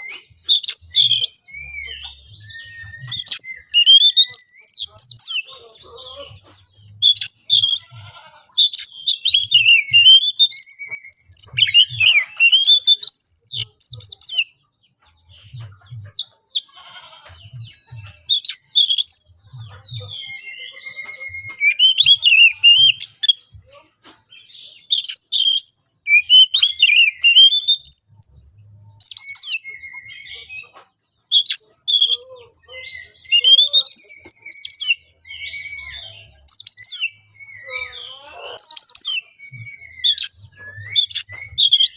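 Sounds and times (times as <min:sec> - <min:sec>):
songbird singing whistled phrases: 0:00.0 - 0:05.5, 0:06.8 - 0:14.6, 0:18.1 - 0:41.9.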